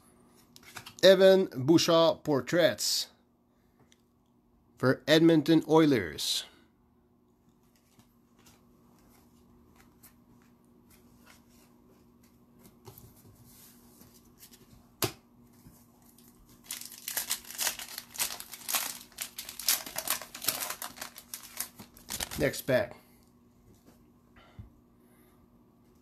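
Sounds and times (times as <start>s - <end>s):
foil wrapper crinkling and tearing: 16.0s - 22.7s.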